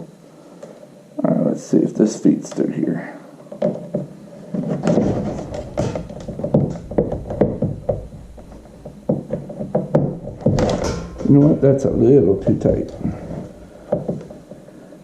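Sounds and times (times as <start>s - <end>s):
cable knocking and scraping in hole: 3.6s - 14.6s.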